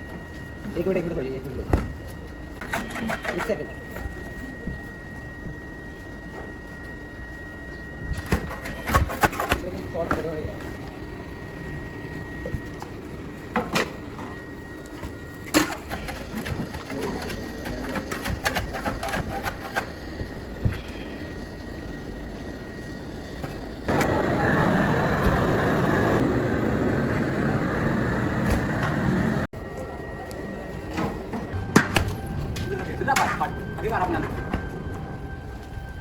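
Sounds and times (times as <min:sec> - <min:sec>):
loud machine running: 0:08.0 - 0:36.0
workshop knocks and clicks: 0:14.9 - 0:20.9, 0:30.9 - 0:33.5.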